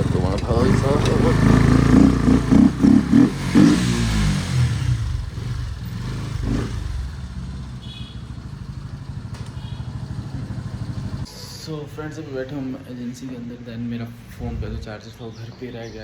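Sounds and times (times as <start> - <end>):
motorcycle engine revving and idling: 0.0 - 11.4.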